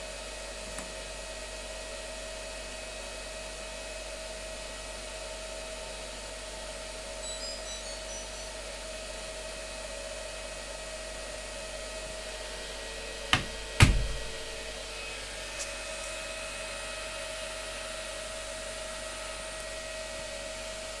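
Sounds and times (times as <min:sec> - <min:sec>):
washing machine whirring hum: 0:00.0 - 0:21.0
sharp knocks with low thud: 0:13.4 - 0:14.5.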